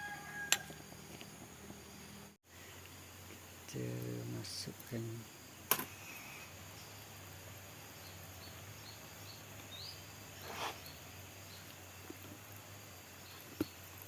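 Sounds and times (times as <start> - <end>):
short hiss: 10.4 - 10.9.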